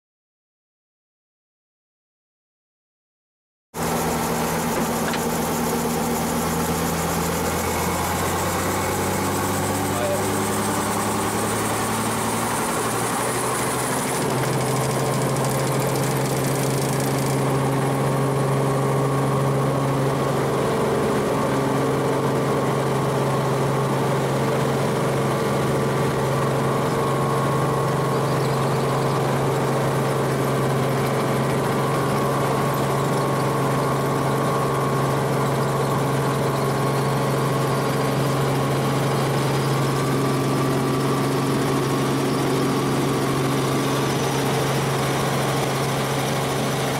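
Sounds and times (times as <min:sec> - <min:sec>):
helicopter engine and rotor: 0:03.8 - 0:46.9.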